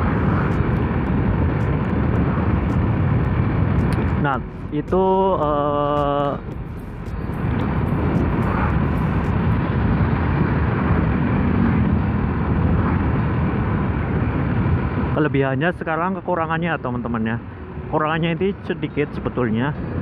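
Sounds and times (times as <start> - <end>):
scooter engine: 0.0 - 4.7, 6.0 - 12.9
road noise: 0.0 - 20.0
wind rushing over microphone: 0.0 - 20.0.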